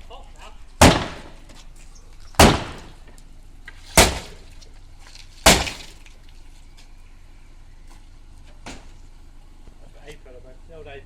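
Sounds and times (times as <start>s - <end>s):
sledgehammer striking car: 0.8s - 1.6s, 2.4s - 3.2s, 3.9s - 4.5s, 5.4s - 6.1s, 8.6s - 9.0s
glass breaking: 3.9s - 4.4s, 5.4s - 6.1s.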